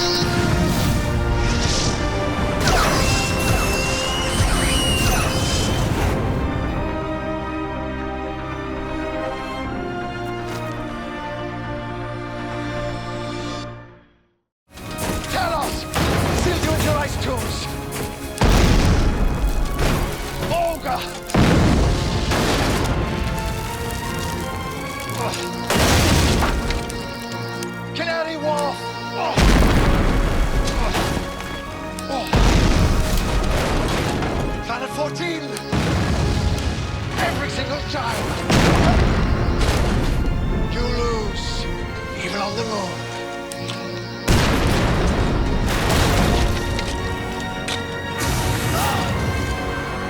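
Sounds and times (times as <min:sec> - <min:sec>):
dramatic score music: 0:00.0 - 0:50.0
loud crash or boom: 0:21.3 - 0:24.4, 0:35.8 - 0:40.6.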